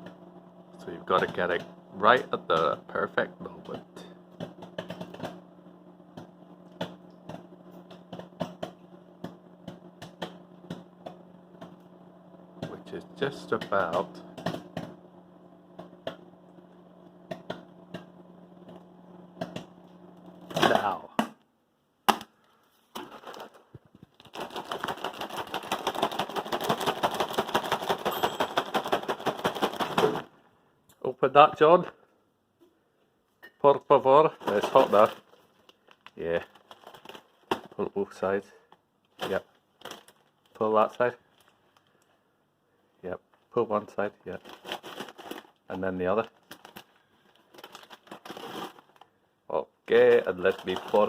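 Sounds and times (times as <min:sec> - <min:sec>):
microwave oven humming: 0:00.0 - 0:21.2, 0:24.3 - 0:30.8, 0:45.4 - 0:51.0
popcorn popping: 0:00.0 - 0:30.3, 0:34.3 - 0:41.1, 0:43.6 - 0:49.1, 0:49.9 - 0:51.0.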